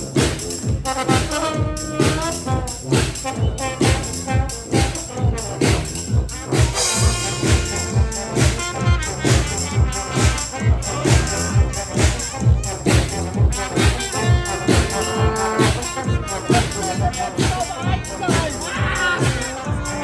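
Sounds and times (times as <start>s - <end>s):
oompah band playing: 0.0s - 20.0s.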